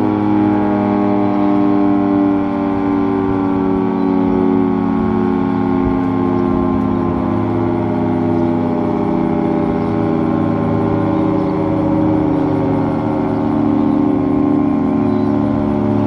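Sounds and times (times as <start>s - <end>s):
warning siren multi-tone chord: 0.0s - 16.0s.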